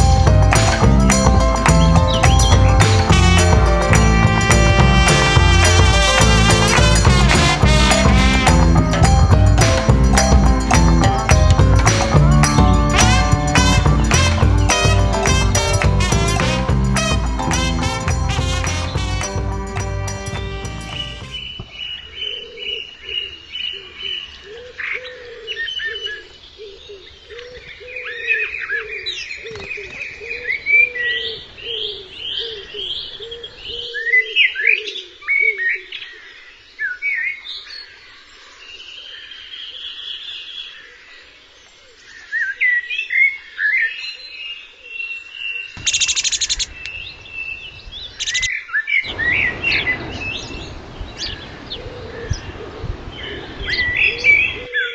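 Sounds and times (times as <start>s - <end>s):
low repeating call: 0.0s - 21.6s.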